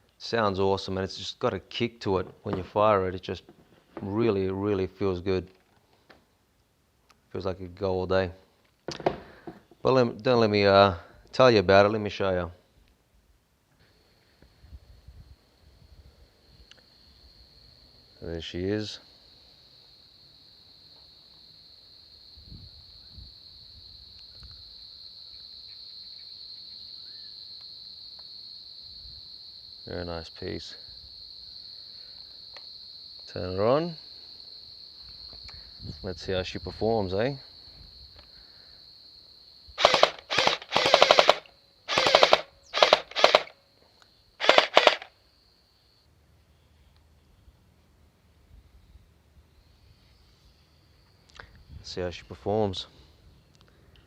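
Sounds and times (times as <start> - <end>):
crickets chirping: 13.7 - 54.0
gel blaster full-auto bursts: 39.8 - 43.6, 44.4 - 45.1.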